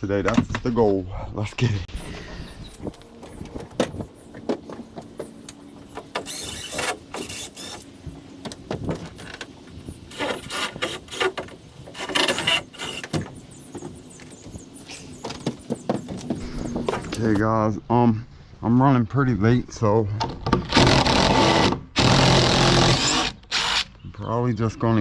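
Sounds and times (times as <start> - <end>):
cordless drill backing out screws: 6.0 - 7.9.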